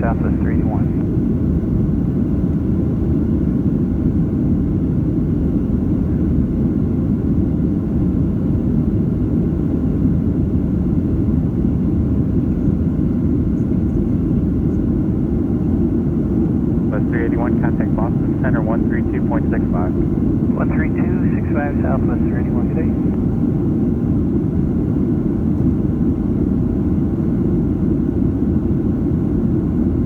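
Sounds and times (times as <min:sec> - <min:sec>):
airflow over the fuselage: 0:00.0 - 0:30.0
jet engines at climb thrust: 0:00.0 - 0:30.0.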